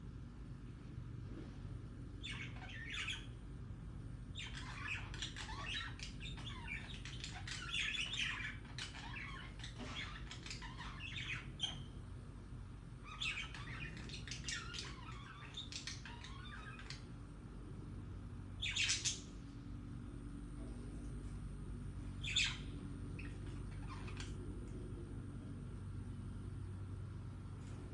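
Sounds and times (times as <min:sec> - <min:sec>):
low hum: 0:00.0 - 0:27.9
budgerigars chattering: 0:04.4 - 0:11.9, 0:13.0 - 0:17.1, 0:18.6 - 0:19.3, 0:22.2 - 0:24.4.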